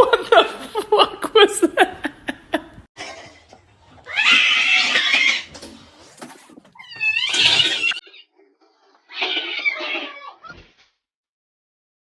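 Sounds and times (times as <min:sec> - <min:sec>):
cat yowling: 0:09.0 - 0:10.5.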